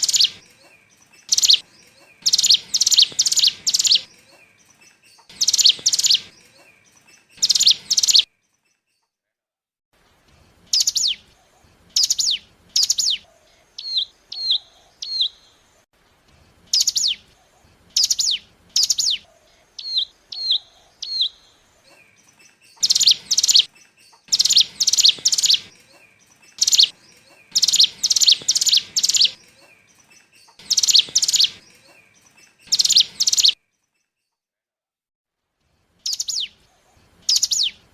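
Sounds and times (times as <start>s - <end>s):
sharp high bird chirps: 0.0s - 9.1s, 10.7s - 11.2s, 22.0s - 34.3s, 36.0s - 36.6s, 37.3s - 37.8s.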